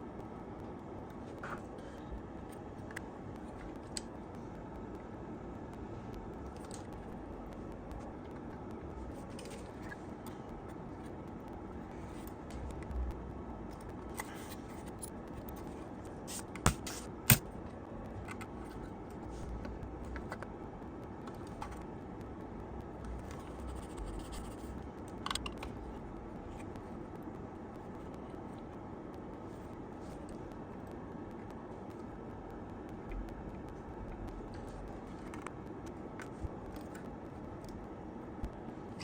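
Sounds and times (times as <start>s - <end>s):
steady background noise: 0.0s - 39.0s.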